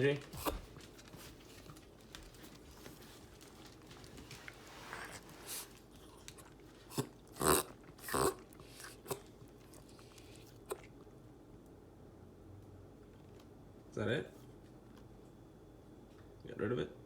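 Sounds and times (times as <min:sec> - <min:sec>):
dog hiccuping: 0:06.9 - 0:09.3.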